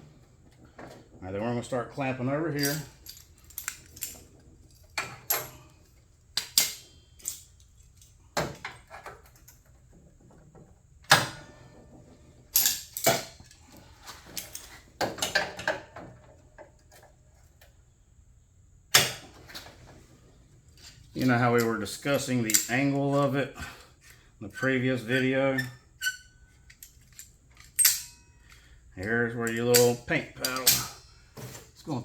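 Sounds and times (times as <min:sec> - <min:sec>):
metal clamps clicking and clanking: 0:00.5 - 0:09.6, 0:12.5 - 0:16.0, 0:20.8 - 0:23.4, 0:24.6 - 0:31.5.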